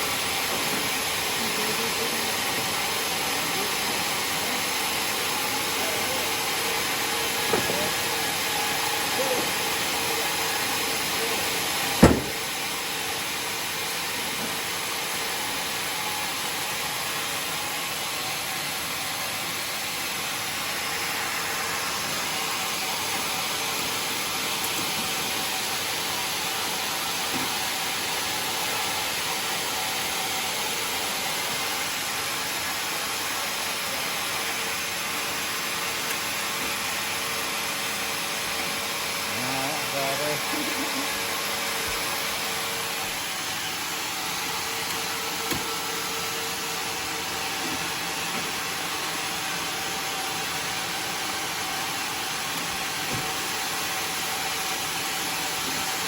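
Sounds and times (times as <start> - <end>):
sawmill running with hiss: 0.0 - 56.0
sharp knock: 12.0 - 12.4.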